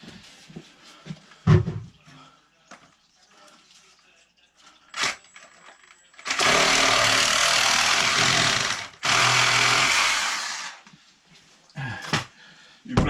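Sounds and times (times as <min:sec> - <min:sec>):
handheld power tool running: 0:06.2 - 0:10.8.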